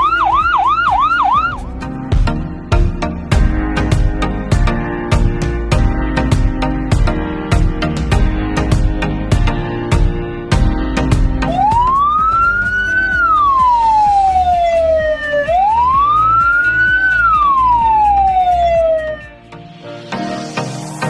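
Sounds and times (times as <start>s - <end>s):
ambulance siren wailing: 0.0s - 1.6s, 11.4s - 19.4s
music beat: 0.0s - 21.0s.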